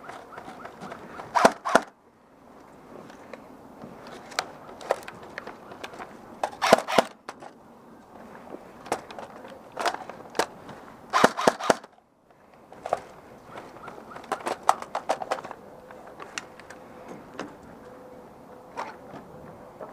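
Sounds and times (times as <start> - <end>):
airsoft guns firing: 1.3 - 2.0, 6.6 - 7.2, 11.1 - 11.9.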